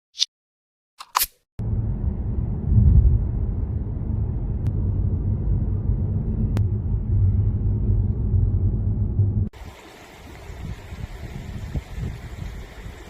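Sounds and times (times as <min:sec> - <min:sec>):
wind buffeting microphone: 0:10.2 - 0:13.0.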